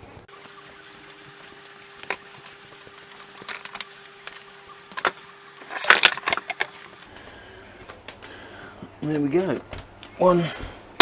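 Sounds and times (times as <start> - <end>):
faint steady hum: 0.1 - 7.6
clattering metal scrape: 0.3 - 7.1
metal knocks and clinks: 0.4 - 7.1.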